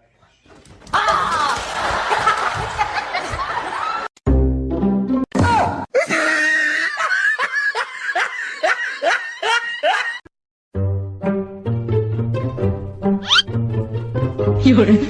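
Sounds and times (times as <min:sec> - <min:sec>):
high-pitched laughter: 0:13.2 - 0:13.4.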